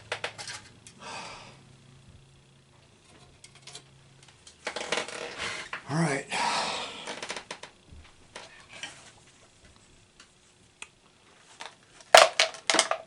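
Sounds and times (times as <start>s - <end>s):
small parts clicking and tapping: 0.0s - 1.0s.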